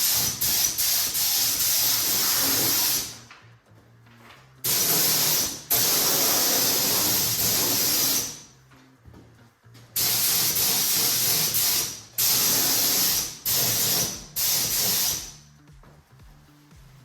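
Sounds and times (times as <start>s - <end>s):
spray gun hissing: 0.0s - 3.2s, 4.7s - 8.5s, 10.0s - 15.4s.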